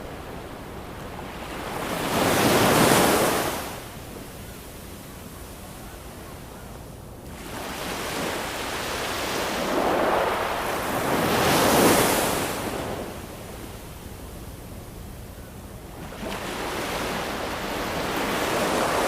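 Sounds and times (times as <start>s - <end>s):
ocean waves breaking: 0.0s - 4.0s, 7.3s - 13.2s, 15.9s - 19.0s.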